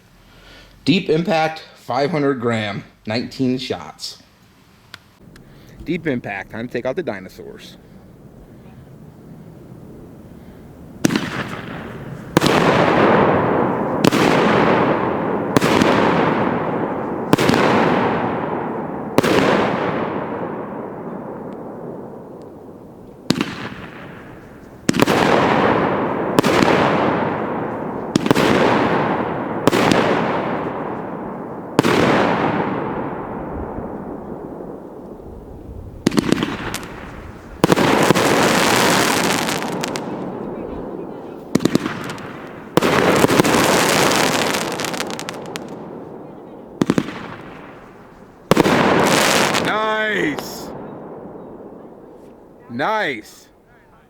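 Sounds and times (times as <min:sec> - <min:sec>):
firework crackle burning out: 0:09.0 - 0:20.5, 0:22.3 - 0:32.9, 0:34.6 - 0:40.4, 0:41.4 - 0:46.2, 0:46.8 - 0:50.8
firework shots banging: 0:11.0 - 0:35.2, 0:36.0 - 0:52.7.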